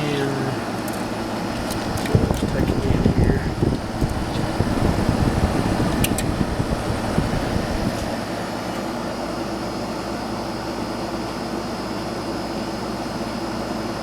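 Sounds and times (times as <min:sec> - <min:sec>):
air conditioner hum: 0:00.0 - 0:14.0
low rumble: 0:01.2 - 0:08.2
rush of air: 0:01.4 - 0:08.5.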